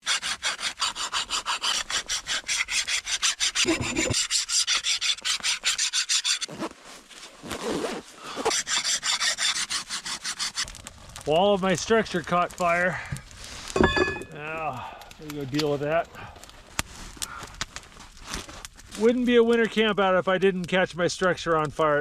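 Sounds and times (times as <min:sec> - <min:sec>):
hand file rasping: 0:00.0 - 0:06.5, 0:08.4 - 0:10.7.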